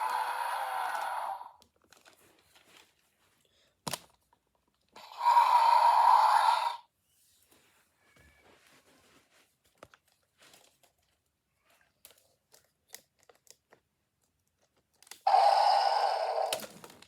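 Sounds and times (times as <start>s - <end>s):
electronic dinosaur roar: 0.0s - 1.5s, 5.0s - 6.8s, 15.3s - 16.7s
toy click: 15.1s - 16.7s.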